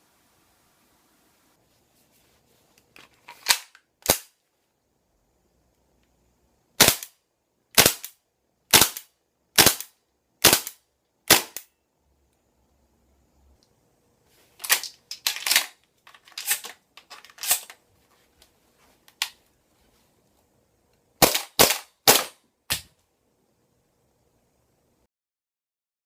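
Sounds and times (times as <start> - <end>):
airsoft gun shots: 6.8 - 7.1, 7.8 - 8.1, 8.7 - 11.7, 21.2 - 22.9.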